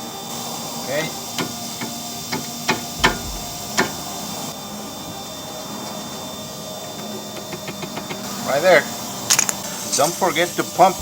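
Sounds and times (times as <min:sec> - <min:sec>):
steady background hum: 0:00.0 - 0:11.0
sharp metallic knocks: 0:01.4 - 0:04.1.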